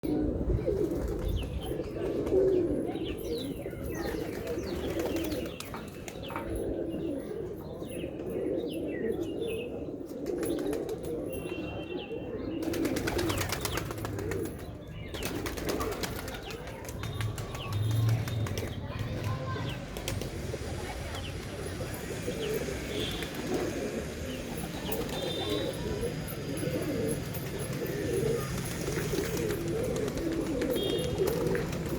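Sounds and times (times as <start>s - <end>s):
pigeons cooing: 0.0s - 31.9s
wings flapping: 12.6s - 31.9s.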